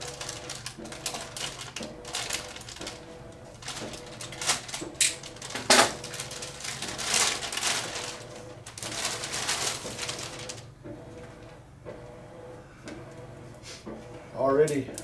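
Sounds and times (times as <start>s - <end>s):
packing tape peeling: 0.0s - 10.6s
packaging crinkling: 0.0s - 10.7s.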